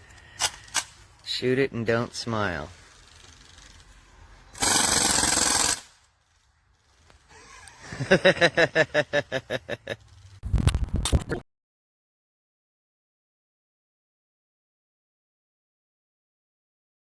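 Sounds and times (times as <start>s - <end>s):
bb rifle full-auto burst: 4.6s - 6.0s
person laughing: 7.3s - 10.1s.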